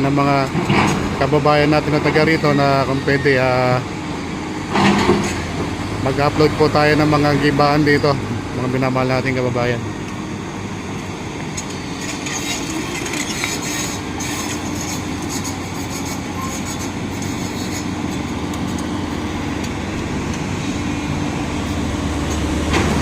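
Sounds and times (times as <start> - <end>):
diesel engine running: 0.0 - 23.0
metallic clanks and scraping: 0.4 - 1.1, 4.7 - 5.4, 11.6 - 18.9.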